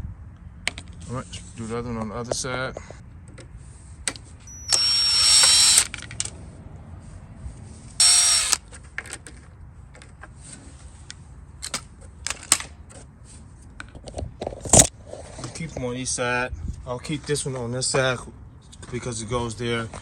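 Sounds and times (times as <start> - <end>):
power driver running: 4.6 - 5.9, 8.0 - 8.6.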